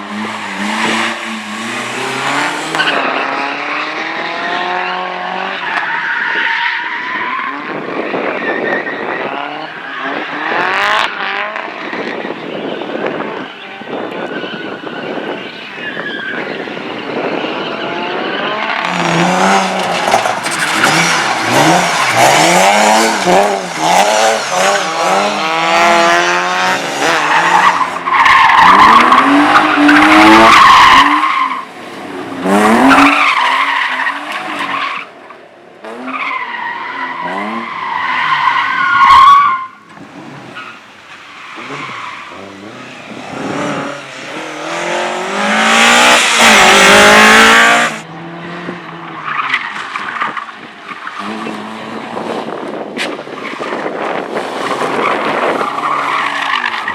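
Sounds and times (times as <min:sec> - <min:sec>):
race car engine revving: 0:00.0 - 0:05.6, 0:17.2 - 0:34.8, 0:37.1 - 0:52.9
tyres squealing: 0:36.1 - 0:48.0.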